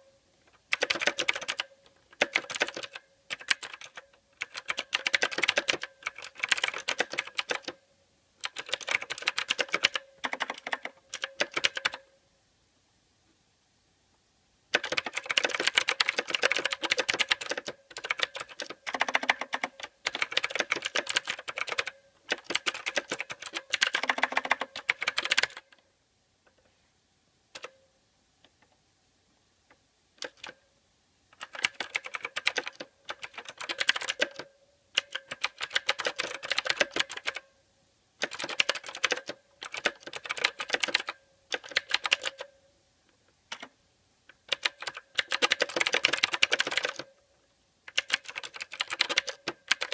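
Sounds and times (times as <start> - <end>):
mechanical keyboard typing: 0.5 - 7.8, 8.4 - 12.1, 14.7 - 25.8, 27.5 - 27.8, 30.2 - 30.6, 31.4 - 37.5, 38.2 - 42.5, 43.5 - 43.7, 44.3 - 47.1, 47.9 - 49.9.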